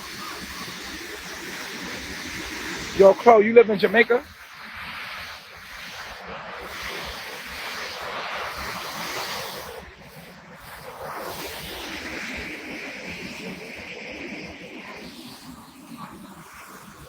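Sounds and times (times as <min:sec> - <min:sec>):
waterfall rushing: 0:00.0 - 0:04.3.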